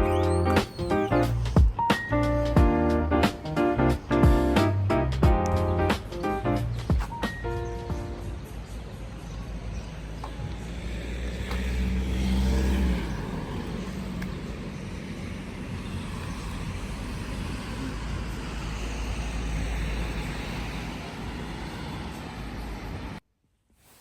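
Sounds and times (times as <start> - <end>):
road traffic noise: 0.0 - 23.2
low engine drone: 11.7 - 21.6.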